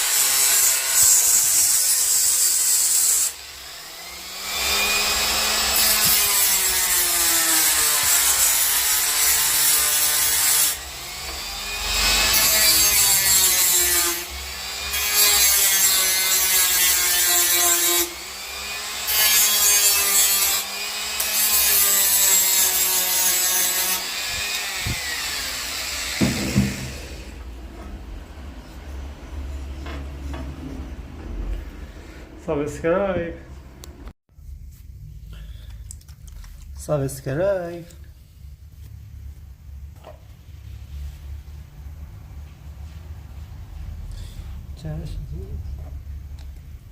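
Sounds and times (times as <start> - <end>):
die grinder grinding wood: 0.0 - 27.6.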